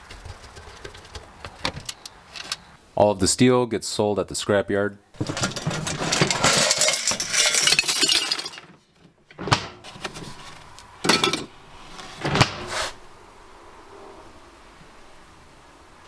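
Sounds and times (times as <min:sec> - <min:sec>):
computer parts clattering: 0:00.1 - 0:02.7, 0:05.2 - 0:08.8, 0:09.4 - 0:11.6.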